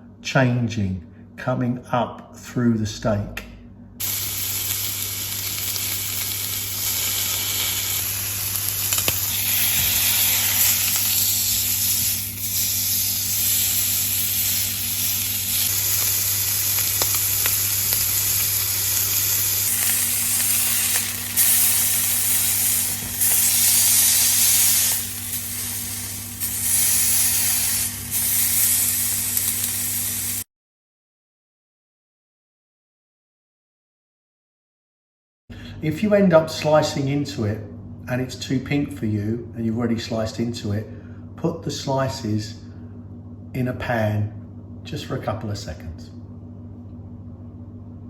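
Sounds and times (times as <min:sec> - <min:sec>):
low steady hum: 0:00.0 - 0:30.2, 0:35.5 - 0:48.0
steak sizzling in pan: 0:04.0 - 0:30.4.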